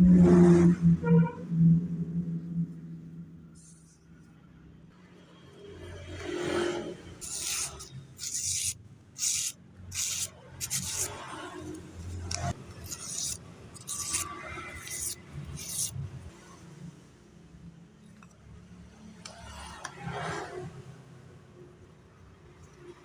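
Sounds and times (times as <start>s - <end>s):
knife blade rasping strokes: 7.2s - 16.1s.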